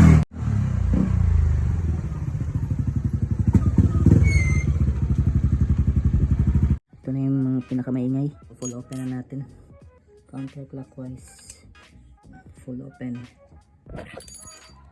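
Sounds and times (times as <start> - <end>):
scooter engine idling and revving: 0.0 - 6.8.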